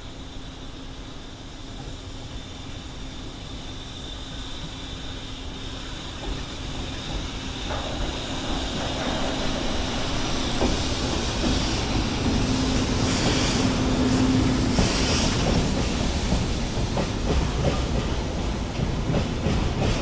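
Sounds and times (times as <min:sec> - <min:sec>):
freight train approaching: 0:00.0 - 0:20.0
locomotive hum: 0:00.1 - 0:20.0
wheels clacking over rails: 0:06.2 - 0:20.0.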